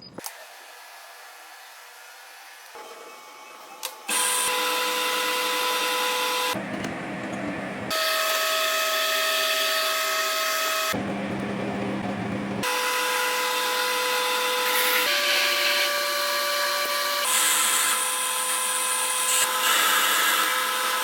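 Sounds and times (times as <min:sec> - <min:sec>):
electric power tool whining: 0:00.2 - 0:21.0.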